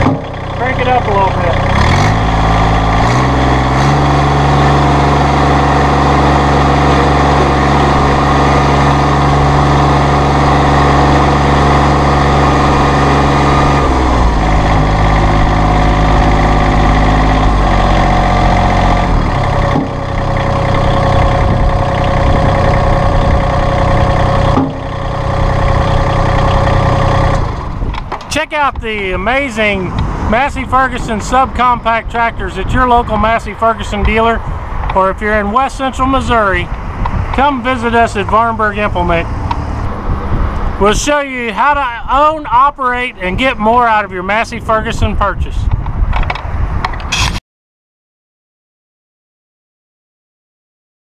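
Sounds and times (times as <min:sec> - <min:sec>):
tractor diesel engine running: 0:00.0 - 0:47.4.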